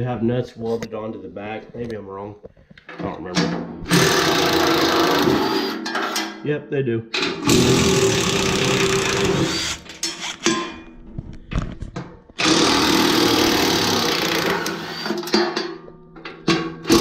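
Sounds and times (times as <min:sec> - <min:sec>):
power drill running: 0:03.9 - 0:05.8, 0:07.4 - 0:10.5, 0:12.4 - 0:15.2.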